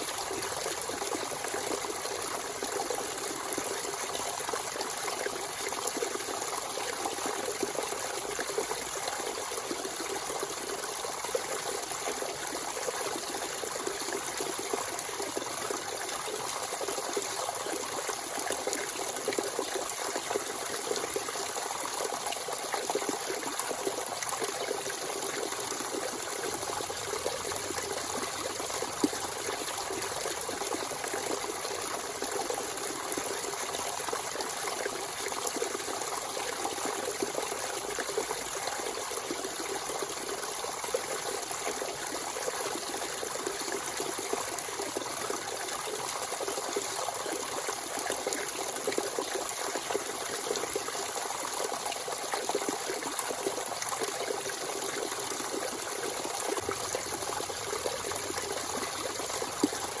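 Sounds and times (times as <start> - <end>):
spring water trickling: 20.4 - 36.3, 51.4 - 60.0.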